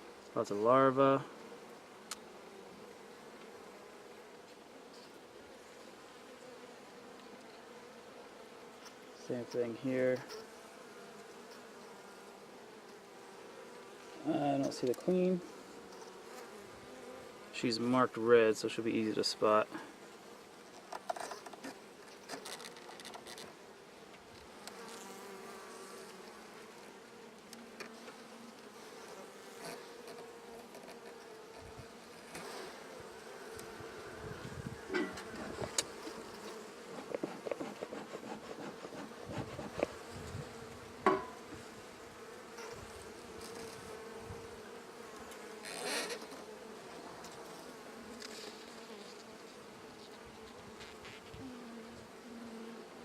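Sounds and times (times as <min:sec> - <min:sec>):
bees buzzing: 0:09.5 - 0:17.6, 0:21.4 - 0:53.0.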